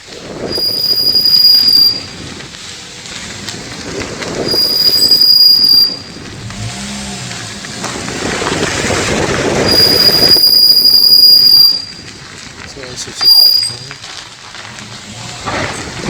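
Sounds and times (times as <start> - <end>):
rolling car rumble: 0.0 - 16.0
car brakes squealing: 0.4 - 3.5, 4.3 - 12.2, 13.1 - 14.2.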